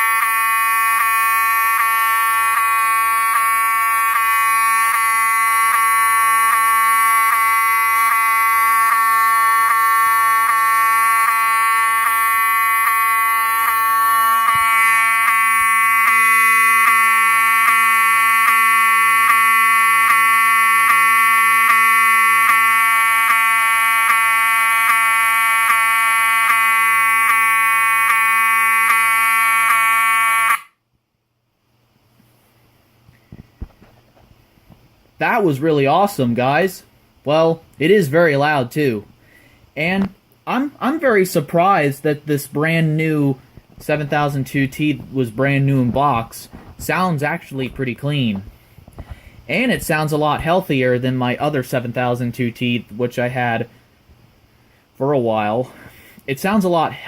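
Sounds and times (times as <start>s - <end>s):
buzzy horn strobe honk: 0.0s - 30.7s.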